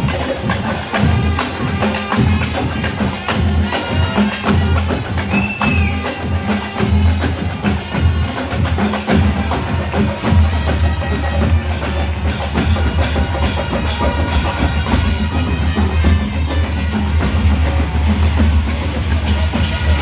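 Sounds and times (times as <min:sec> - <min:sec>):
drums and percussion: 0:00.0 - 0:20.0
marching band playing: 0:00.0 - 0:20.0.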